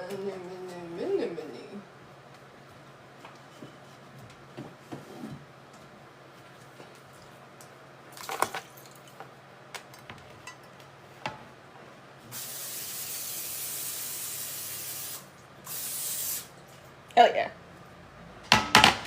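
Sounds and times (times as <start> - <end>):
aerosol cooking spray hissing: 12.3 - 16.5.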